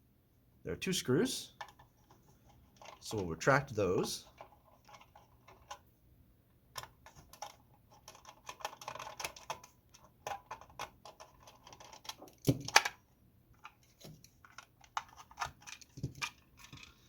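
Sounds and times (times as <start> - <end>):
plastic phone housing handled: 13.6 - 16.9.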